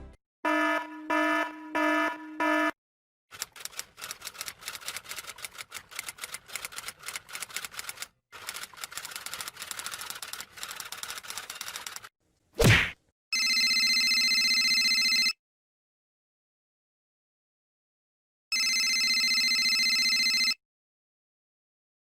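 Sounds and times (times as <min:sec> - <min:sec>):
typewriter typing clicks: 0:03.3 - 0:12.1.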